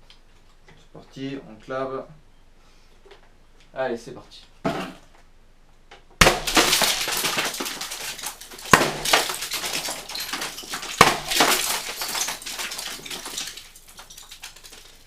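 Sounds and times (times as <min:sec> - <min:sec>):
bbs clattering: 0:06.2 - 0:15.0.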